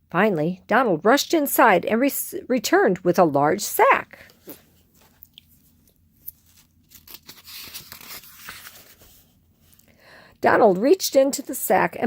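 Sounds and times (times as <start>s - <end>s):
paper page turning rustle: 4.4s - 9.8s.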